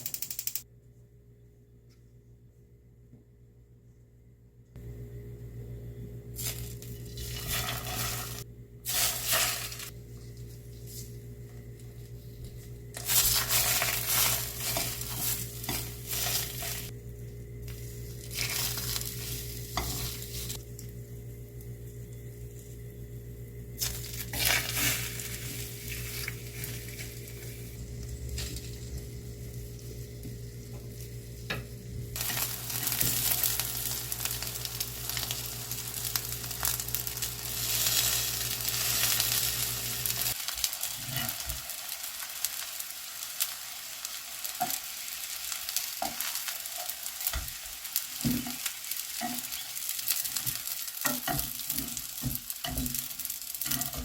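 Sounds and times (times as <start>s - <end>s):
food sizzling in a pan: 6.4s - 10.0s, 13.0s - 20.8s, 23.8s - 54.0s.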